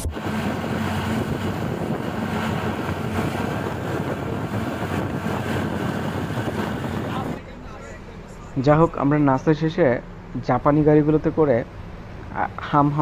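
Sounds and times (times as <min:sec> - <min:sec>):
wind buffeting microphone: 0:00.0 - 0:07.5.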